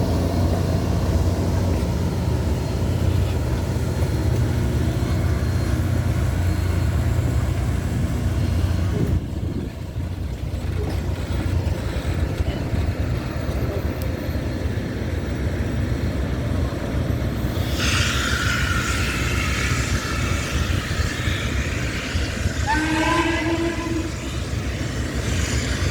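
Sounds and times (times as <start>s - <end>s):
steam whistle: 21.5s - 24.6s.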